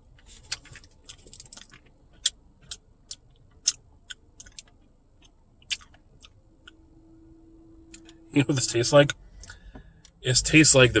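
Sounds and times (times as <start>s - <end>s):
wet mouth clicks and smacks: 0.5s - 4.7s, 5.6s - 6.0s.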